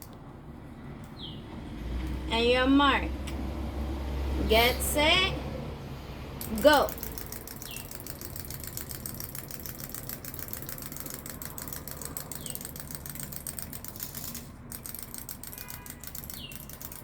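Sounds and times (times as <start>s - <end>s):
wind-up toy whirring: 6.4s - 17.0s.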